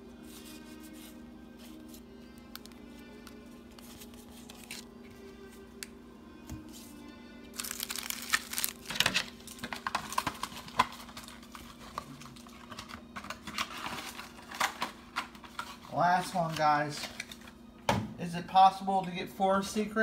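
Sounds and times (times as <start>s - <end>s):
faint background music: 0.0s - 20.0s
foil wrapper tearing and crinkling: 3.8s - 4.9s, 7.6s - 15.7s.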